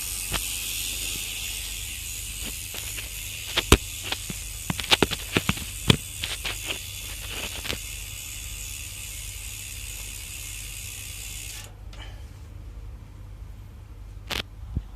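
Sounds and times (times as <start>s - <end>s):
bicycle hub freewheel clicking: 0.0s - 11.8s
freewheel buzz: 0.0s - 12.0s.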